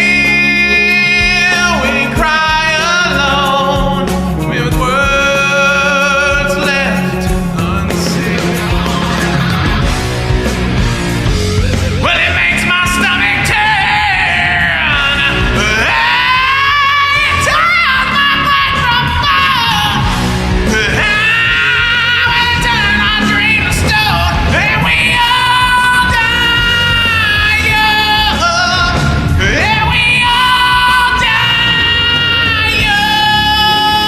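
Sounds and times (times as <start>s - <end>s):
male singer high notes: 0.0s - 9.4s
hard rock band playing: 0.0s - 34.0s.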